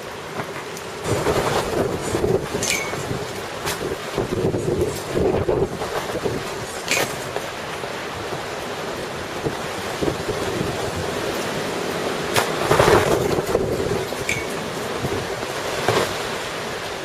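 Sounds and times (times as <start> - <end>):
gusty wind through trees: 0.0 - 17.0
wind buffeting microphone: 0.0 - 17.0.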